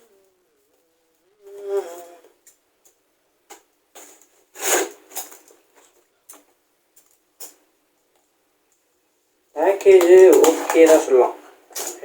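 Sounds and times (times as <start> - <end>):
parcel packaging rustling: 9.9 - 11.2.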